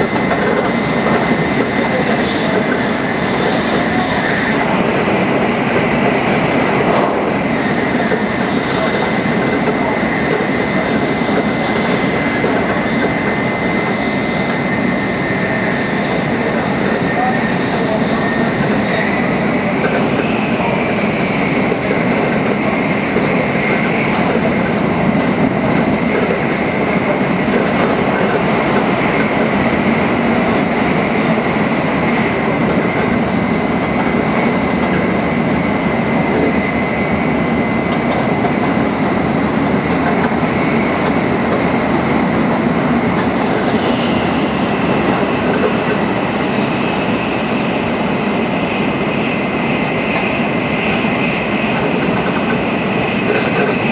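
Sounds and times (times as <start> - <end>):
train rushing noise: 0.0 - 53.9
high-pitched whine: 0.2 - 26.4, 43.6 - 53.3.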